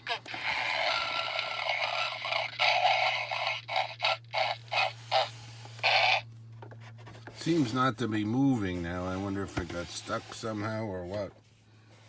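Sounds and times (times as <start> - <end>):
toy speaker rasping grunts: 0.0 - 6.2.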